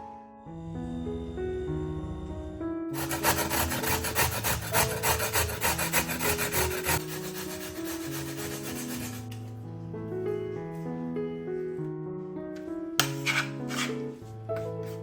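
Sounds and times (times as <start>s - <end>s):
soft background music: 0.0s - 15.0s
rapid rubbing strokes: 3.0s - 9.4s, 13.2s - 15.0s.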